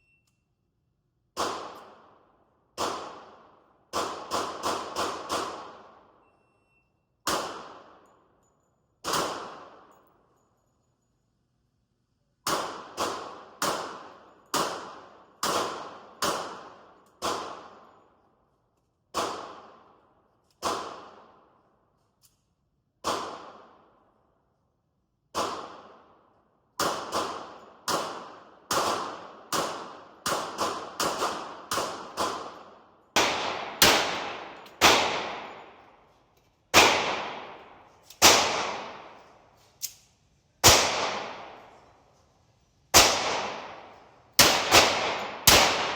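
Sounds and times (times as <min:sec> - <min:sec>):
echoing gunshots: 0:02.8 - 0:06.0, 0:26.8 - 0:36.0, 0:36.7 - 0:39.4, 0:40.6 - 0:41.8, 0:42.9 - 0:45.9.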